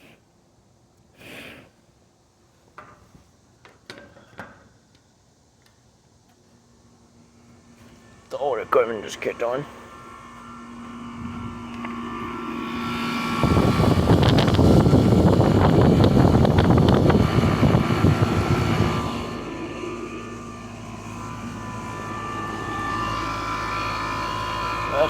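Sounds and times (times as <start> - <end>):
air conditioner unit humming: 0.0 - 25.0
loud rushing noise: 11.2 - 25.0.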